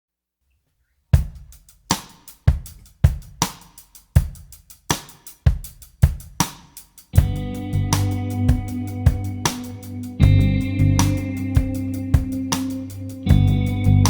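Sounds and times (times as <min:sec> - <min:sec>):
drum kit steady beat: 0:01.2 - 0:14.0.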